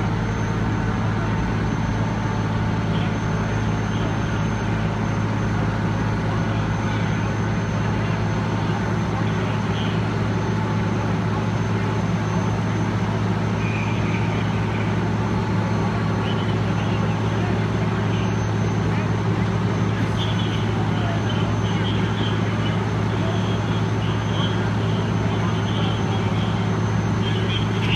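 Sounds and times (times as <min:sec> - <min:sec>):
diesel engine running: 0:00.0 - 0:27.9.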